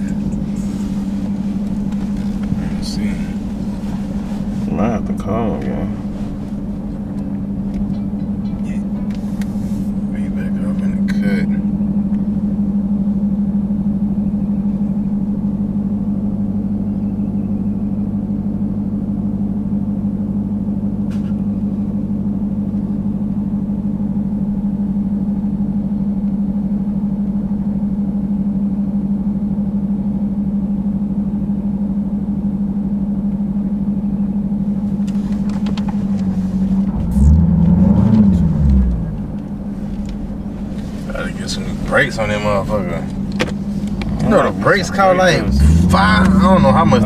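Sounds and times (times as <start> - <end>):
car engine drone from cabin: 0.0 - 47.0
clicks: 34.9 - 46.5.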